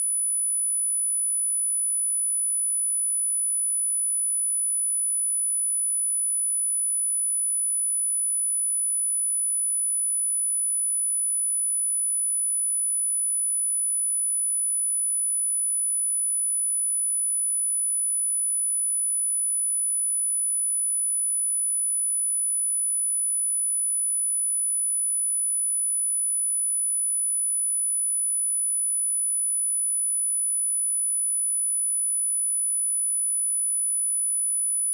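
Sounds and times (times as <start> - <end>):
high-pitched sine test tone: 21.8 - 34.9.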